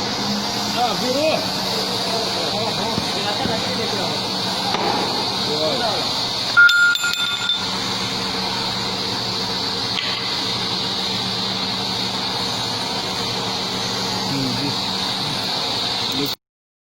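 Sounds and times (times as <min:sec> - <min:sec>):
machinery hum: 0:00.0 - 0:16.4
metallic clink ringing: 0:06.6 - 0:07.8.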